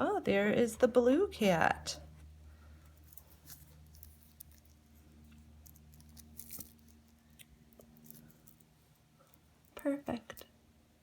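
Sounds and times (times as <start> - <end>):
low room hum: 0.0 - 11.0
small objects clicking and tapping: 3.0 - 10.5.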